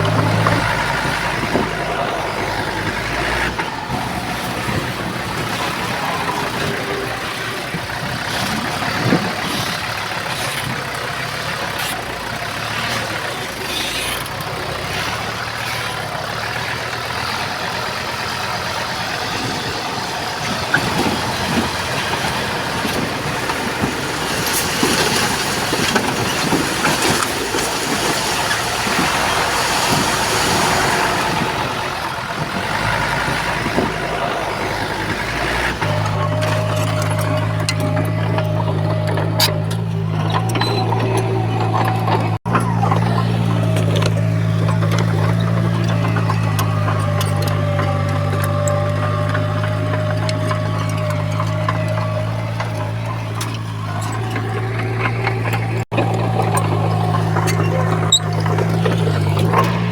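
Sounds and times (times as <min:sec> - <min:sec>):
diesel machinery running: 0:00.0 - 0:59.9
knocks and clanks: 0:00.0 - 0:59.9.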